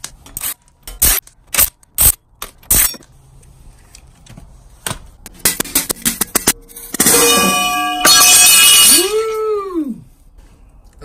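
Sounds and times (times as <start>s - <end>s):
sharp clinks and scrapes: 2.0s - 3.1s.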